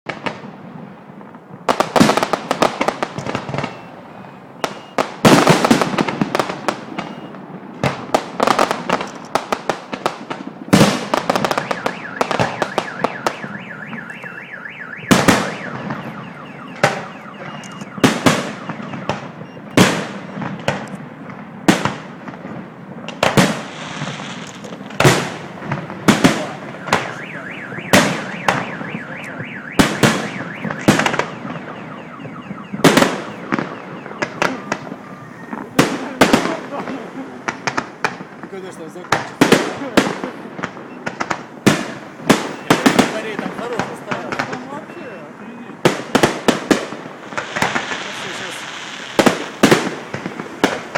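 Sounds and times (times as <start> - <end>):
fireworks bursting with bangs: 0.1 - 50.9
fireworks crackling: 0.1 - 50.9
car alarm wailing: 3.2 - 5.4, 6.9 - 7.5, 11.2 - 21.0, 26.5 - 36.4, 42.2 - 46.4.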